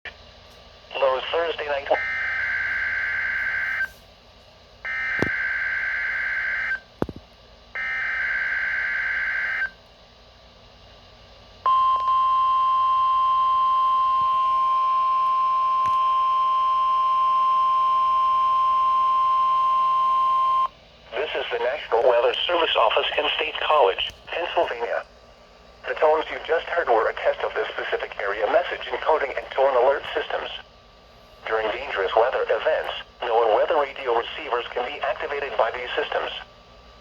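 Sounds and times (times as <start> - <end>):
steady alarm tone: 1.8 - 4.0, 4.8 - 6.9, 7.8 - 9.8, 11.7 - 21.6.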